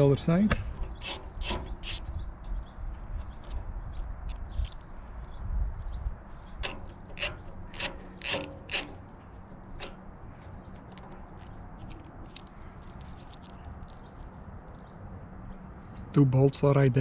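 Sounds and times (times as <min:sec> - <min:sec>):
ratchet wrench clicking: 0:00.8 - 0:02.2, 0:06.6 - 0:09.2.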